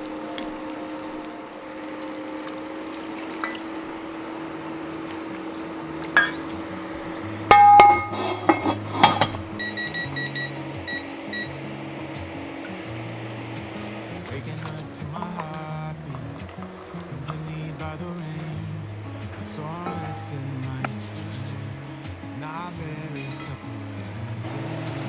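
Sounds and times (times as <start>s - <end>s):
background music: 0.0s - 25.0s
kitchenware clinking and clattering: 5.0s - 10.0s, 19.8s - 21.7s, 23.1s - 25.0s
short metallic ringing: 7.5s - 11.5s, 19.9s - 21.1s.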